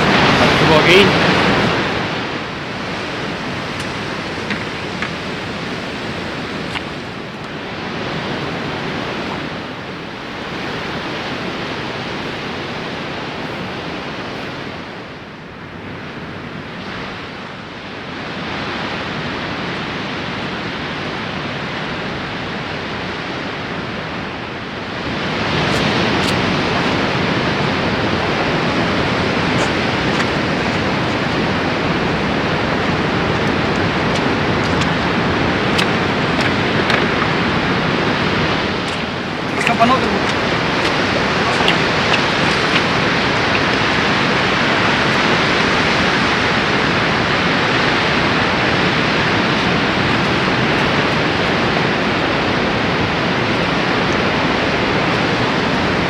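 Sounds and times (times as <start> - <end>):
ocean surf: 0.0 - 56.0.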